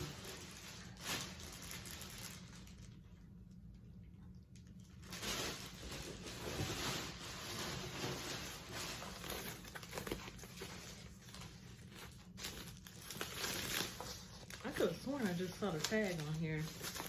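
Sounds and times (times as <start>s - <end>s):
packaging wrap rustling: 0.0s - 3.4s, 4.6s - 17.0s.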